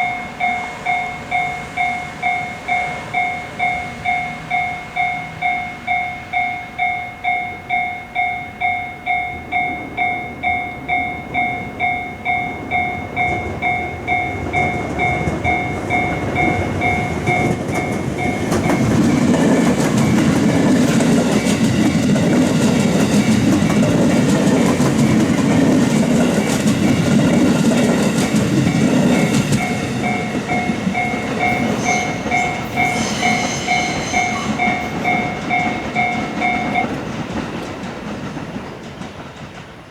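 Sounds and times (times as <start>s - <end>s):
level-crossing warning bell ringing: 0.0s - 38.2s
train wheels rumbling on rails: 0.0s - 39.9s
high squeal: 28.7s - 36.9s.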